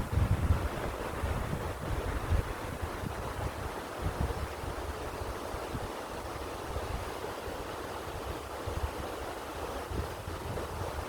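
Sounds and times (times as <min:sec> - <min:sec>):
wind gusting over microphone: 0:00.0 - 0:05.9, 0:09.8 - 0:11.0.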